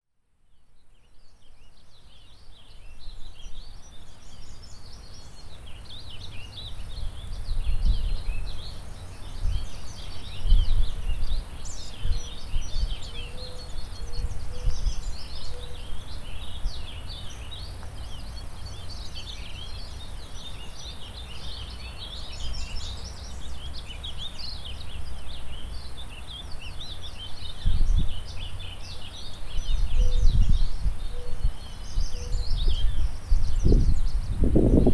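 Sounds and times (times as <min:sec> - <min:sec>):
songbirds chirping and trilling: 0:01.3 - 0:34.9
low gusts of wind: 0:06.8 - 0:26.6, 0:27.2 - 0:34.9.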